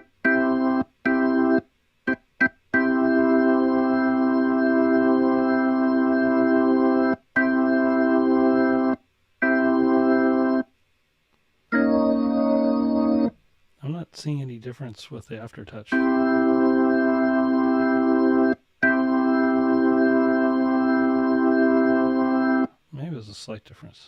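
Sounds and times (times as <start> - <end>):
organ notes: 0.0 - 10.6, 11.7 - 22.7.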